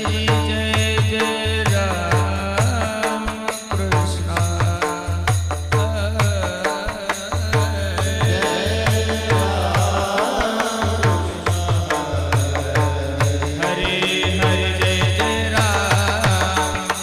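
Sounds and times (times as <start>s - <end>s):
person singing: 5.9s - 17.0s.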